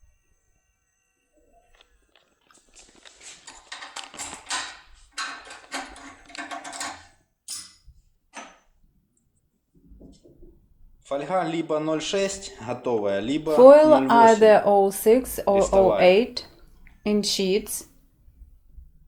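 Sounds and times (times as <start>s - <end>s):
rustling and clicking of objects: 1.7s - 7.2s.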